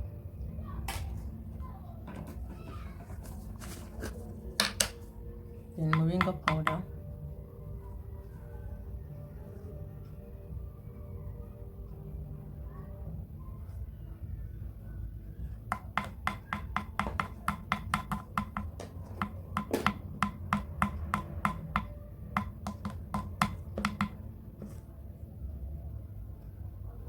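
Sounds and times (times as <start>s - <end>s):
sharp taps of a hard object: 4.6s - 5.0s, 5.9s - 6.8s, 15.7s - 24.8s
knock: 15.7s - 24.8s.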